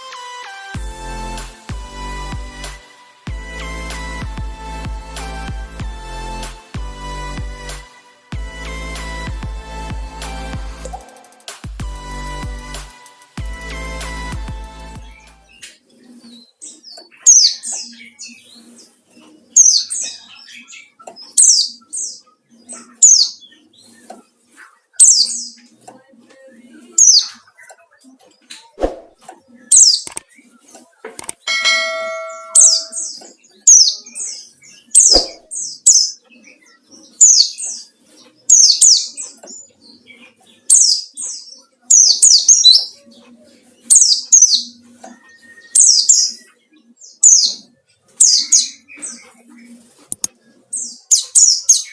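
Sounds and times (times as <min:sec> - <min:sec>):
sharp clicks: 0:30.0 - 0:30.3, 0:31.1 - 0:31.4, 0:50.1 - 0:50.3
brief ringing tone: 0:31.5 - 0:33.0
bird high falling chirps: 0:31.5 - 0:33.9, 0:34.9 - 0:36.2.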